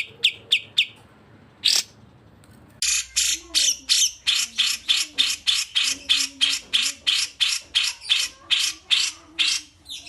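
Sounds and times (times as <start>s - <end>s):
songbird harsh rasping calls: 2.8s - 10.0s.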